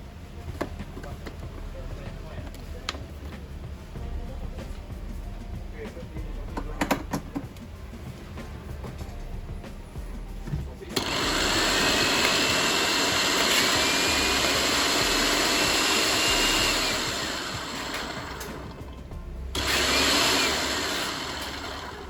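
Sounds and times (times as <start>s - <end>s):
blender motor whirring: 11.0s - 22.0s.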